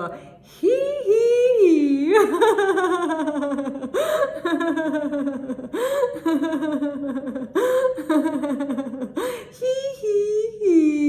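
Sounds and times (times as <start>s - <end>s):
woman laughing in pulsed bursts: 2.1s - 10.4s.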